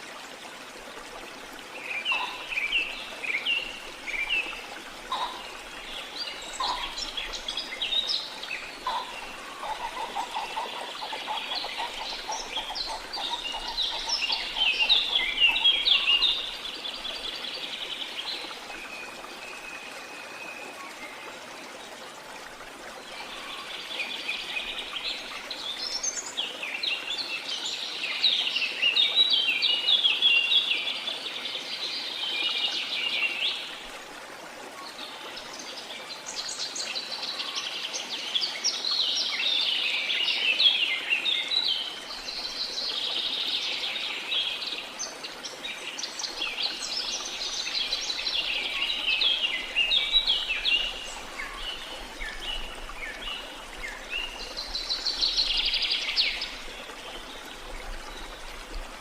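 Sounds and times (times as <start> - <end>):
songbirds singing: 1.7 - 20.0, 36.3 - 58.5.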